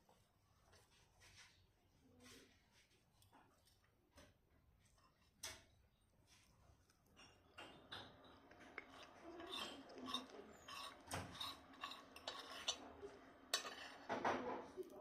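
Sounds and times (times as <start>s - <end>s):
cutlery clinking on a plate: 7.2s - 14.9s
cutlery clatter: 7.2s - 15.0s.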